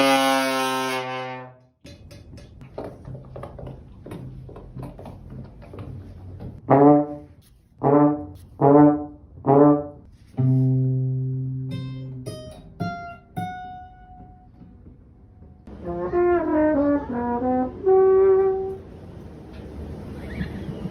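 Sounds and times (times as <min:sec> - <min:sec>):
trombone wah-wah: 0:00.0 - 0:01.5, 0:06.6 - 0:11.6, 0:15.8 - 0:18.8.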